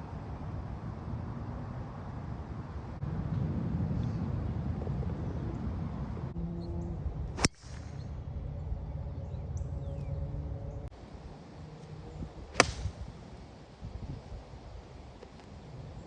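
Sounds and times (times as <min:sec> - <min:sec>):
low outdoor rumble: 0:00.0 - 0:16.0
golf club striking ball: 0:12.5 - 0:13.2.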